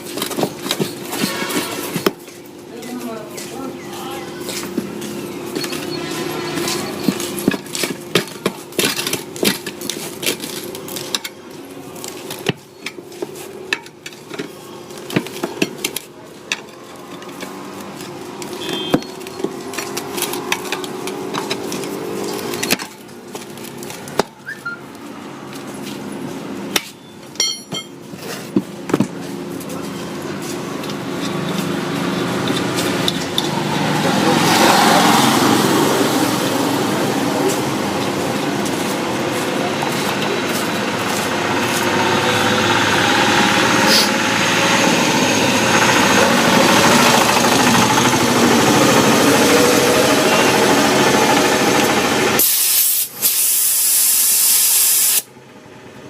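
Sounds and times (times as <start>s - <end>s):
steady engine hum: 0.0s - 53.3s, 55.2s - 56.0s
hand tools clicking on metal: 6.5s - 25.0s, 26.7s - 28.0s, 30.3s - 33.6s
passing vehicle: 16.6s - 26.7s, 29.1s - 52.5s.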